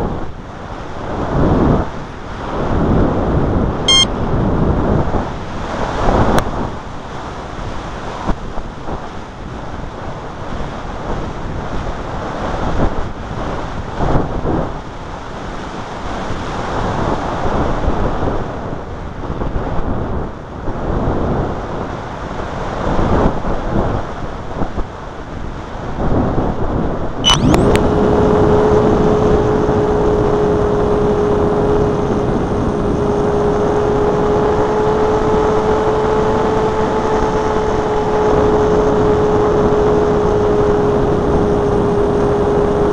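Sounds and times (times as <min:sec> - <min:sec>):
electric motor whine: 0:27.3 - 0:42.9.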